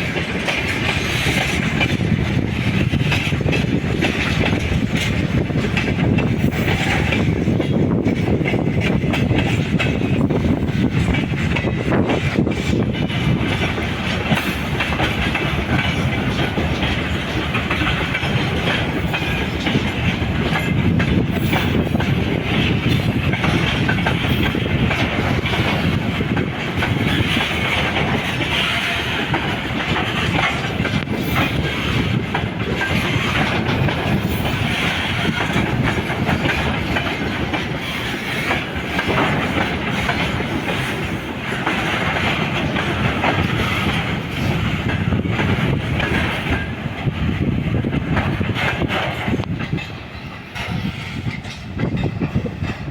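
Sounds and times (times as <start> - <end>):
train rumble: 0.0 - 52.9
train wheels clattering on rails: 0.0 - 52.9.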